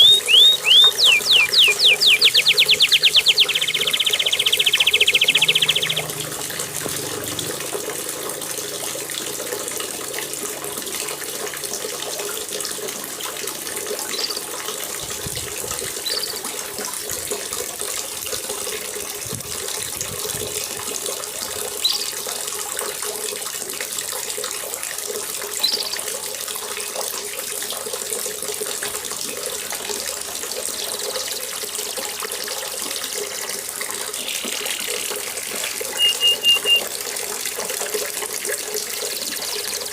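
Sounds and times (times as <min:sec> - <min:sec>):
faint bird chirps: 0:00.0 - 0:06.2, 0:34.2 - 0:36.9
canary trilling: 0:00.0 - 0:06.8, 0:34.2 - 0:36.9.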